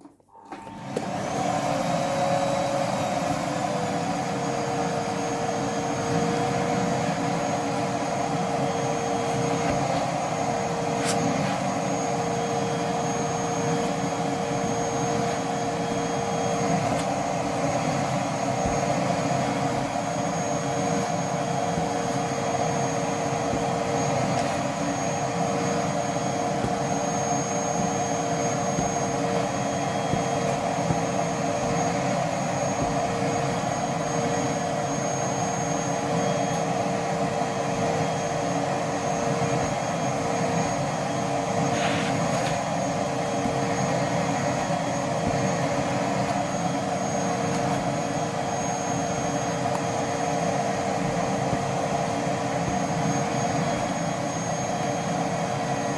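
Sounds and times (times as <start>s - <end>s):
vacuum cleaner running: 0.0s - 55.9s.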